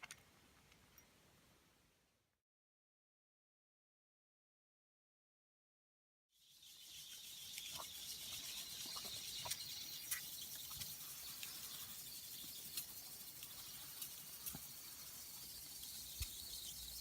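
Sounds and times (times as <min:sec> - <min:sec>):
small ticks and clicks: 0:00.0 - 0:01.1, 0:06.7 - 0:17.0
steam hissing from jets: 0:07.6 - 0:17.0.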